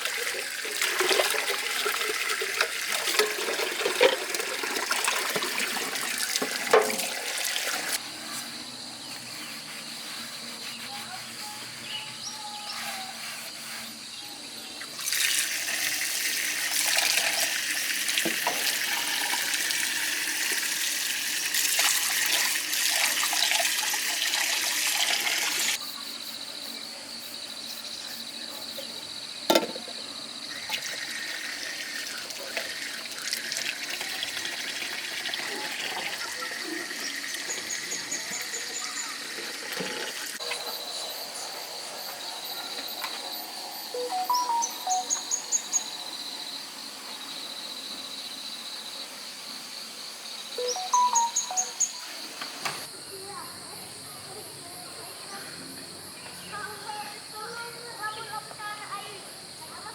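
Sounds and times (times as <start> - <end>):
tap water running: 0.0 - 8.0, 14.8 - 25.8, 29.5 - 40.7.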